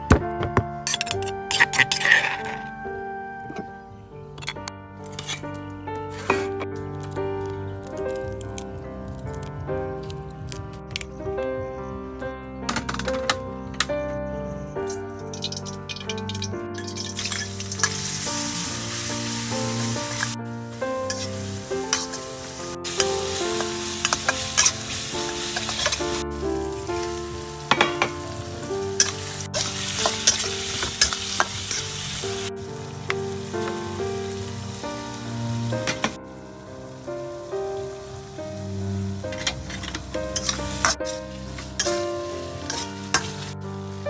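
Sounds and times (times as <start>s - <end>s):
background music: 0.0s - 44.0s
food sizzling in a pan: 15.3s - 44.0s.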